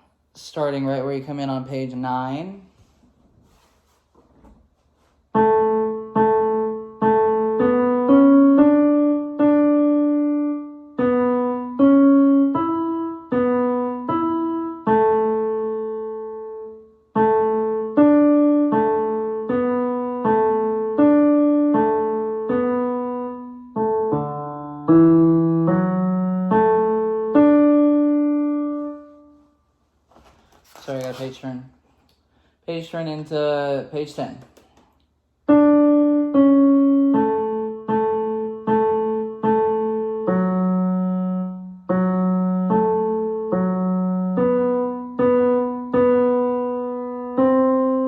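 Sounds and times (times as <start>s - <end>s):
piano melody single notes: 5.4s - 29.5s, 35.5s - 48.0s.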